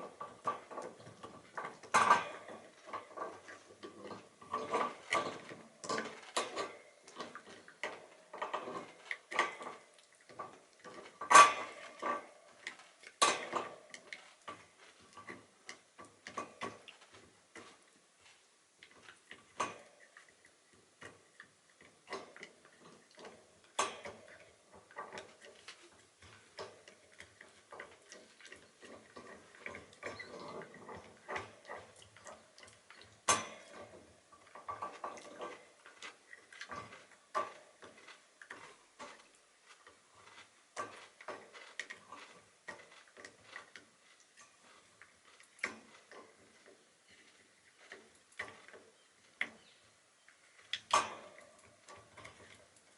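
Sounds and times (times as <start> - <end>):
dog gnawing a hard chew: 19.0 - 49.7
teeth cracking hard hoof: 21.1 - 49.7.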